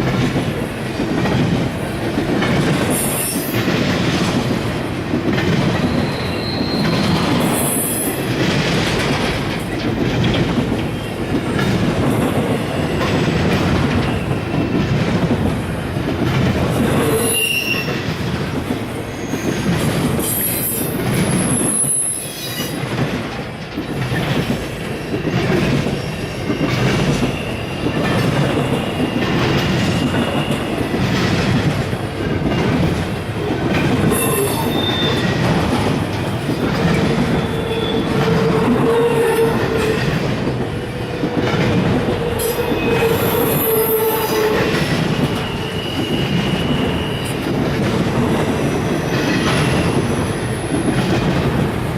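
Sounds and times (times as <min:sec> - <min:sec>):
train wheels clattering on rails: 0:00.0 - 0:51.9
high-pitched wheel squeals: 0:05.9 - 0:07.2, 0:34.1 - 0:35.3, 0:37.4 - 0:39.9, 0:42.3 - 0:47.5.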